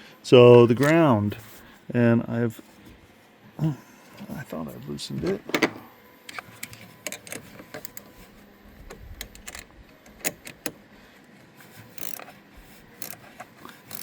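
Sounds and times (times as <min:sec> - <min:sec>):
wrench clicking on metal bolt: 0:09.2 - 0:10.8, 0:12.0 - 0:12.3, 0:13.0 - 0:13.2.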